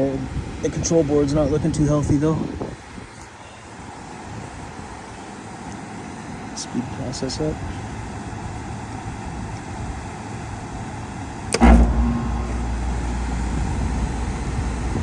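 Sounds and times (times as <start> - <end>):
compressor humming: 11.5 - 15.0
contactor click: 11.5 - 15.0.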